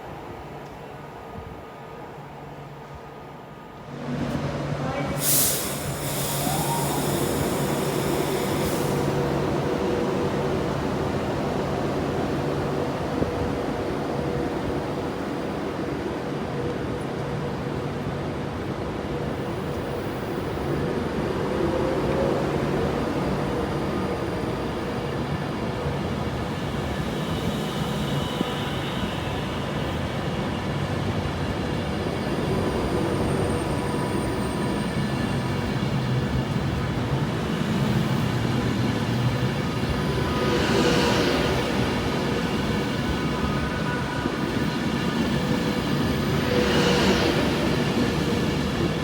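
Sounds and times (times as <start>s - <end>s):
train rumbling: 2.9s - 49.0s.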